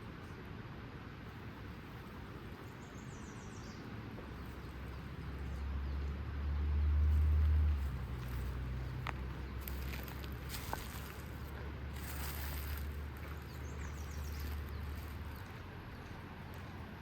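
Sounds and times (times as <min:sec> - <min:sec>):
creek water rushing: 0:03.7 - 0:17.0.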